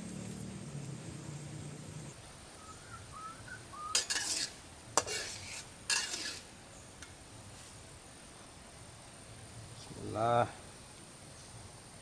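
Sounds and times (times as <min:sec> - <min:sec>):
low motor hum: 0:00.0 - 0:02.2
faint background hiss: 0:00.0 - 0:03.8.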